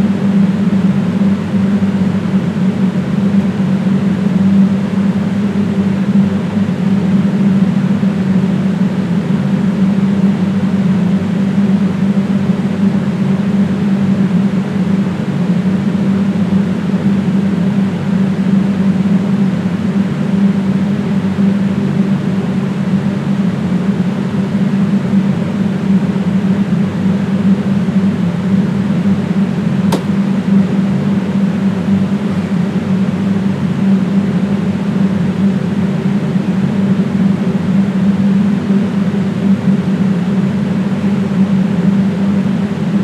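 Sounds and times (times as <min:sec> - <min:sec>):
sharp click: 0:29.9 - 0:30.2.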